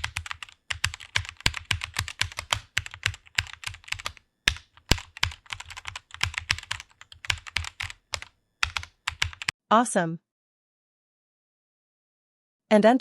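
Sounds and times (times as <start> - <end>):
computer keyboard typing: 0.0 - 9.5.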